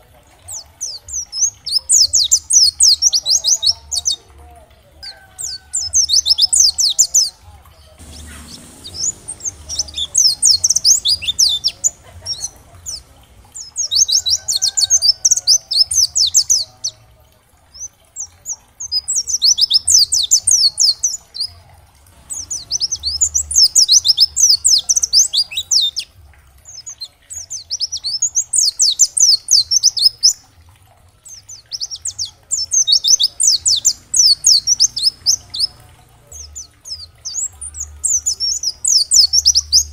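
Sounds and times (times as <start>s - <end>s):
bird twittering: 8.0s - 17.0s, 22.2s - 26.1s, 31.3s - 39.9s.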